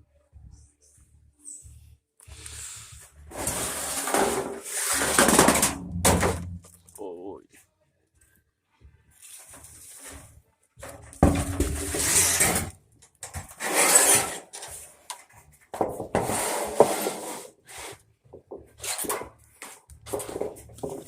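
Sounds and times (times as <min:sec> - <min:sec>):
rough scraping strokes: 0:02.3 - 0:05.8, 0:11.3 - 0:12.7, 0:13.5 - 0:15.0, 0:16.2 - 0:18.0.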